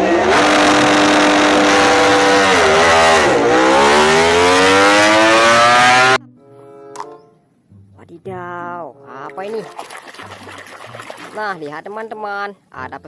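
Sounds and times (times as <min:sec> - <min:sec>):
motorcycle engine revving: 0:00.0 - 0:06.2.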